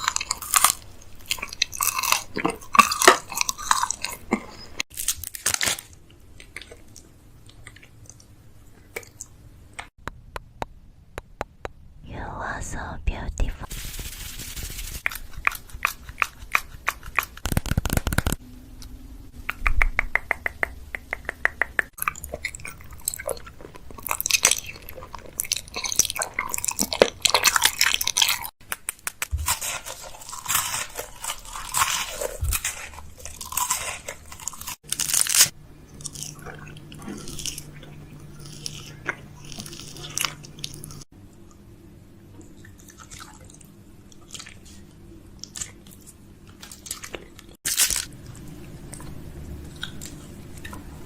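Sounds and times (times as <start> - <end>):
wet mouth clicks and smacks: 15.0 - 18.4, 19.5 - 22.6, 28.6 - 29.4.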